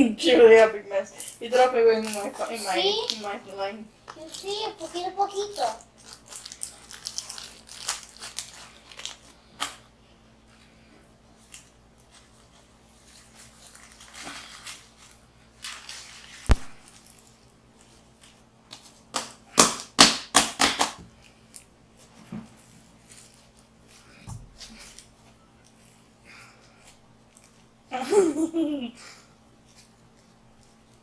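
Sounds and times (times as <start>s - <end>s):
loud snapping pops: 16.5s - 16.8s.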